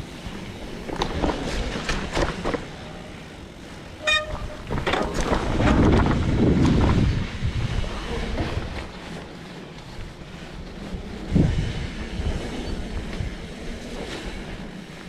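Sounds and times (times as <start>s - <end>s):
tyres rumbling: 0.0s - 15.0s
bike frame rattling and clicking: 0.1s - 11.3s
wind on microphone: 3.8s - 15.0s
short high squeal: 4.0s - 4.7s.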